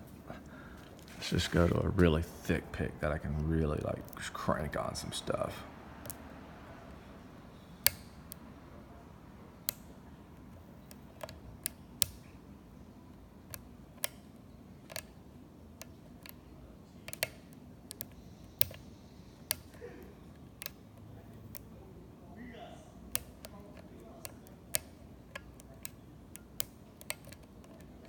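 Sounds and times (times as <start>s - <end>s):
lock pick metal clicks: 7.6s - 8.4s, 9.6s - 12.3s, 13.4s - 15.2s, 15.8s - 21.7s, 23.1s - 28.0s.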